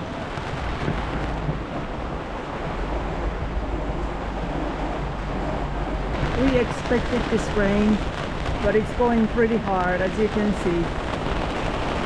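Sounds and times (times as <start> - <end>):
wind buffeting microphone: 0.0 - 12.0
heavy rain hissing: 5.1 - 12.0.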